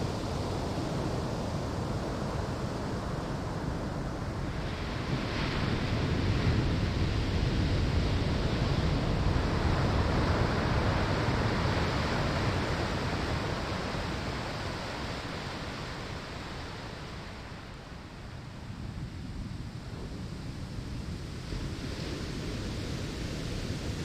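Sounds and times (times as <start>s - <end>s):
ocean surf on shore: 0.0s - 18.7s.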